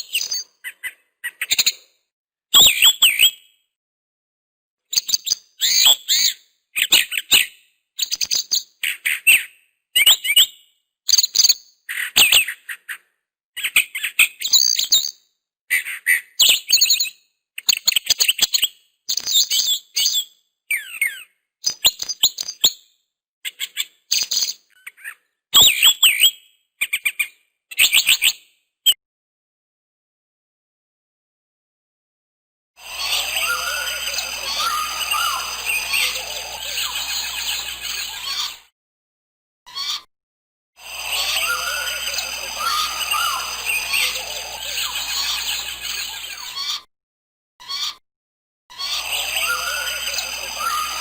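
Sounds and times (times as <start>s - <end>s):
songbird chirping: 32.9s - 38.6s, 41.0s - 46.5s, 49.0s - 51.0s.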